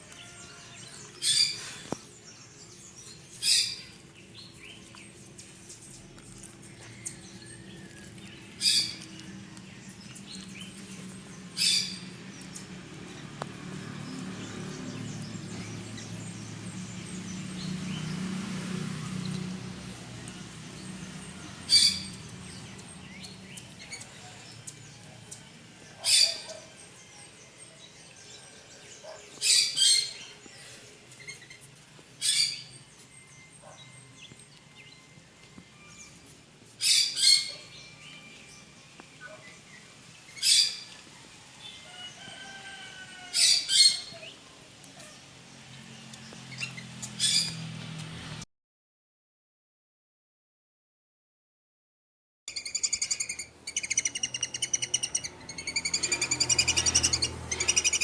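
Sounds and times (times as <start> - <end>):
bird giving sharp calls: 52.5 - 58.0.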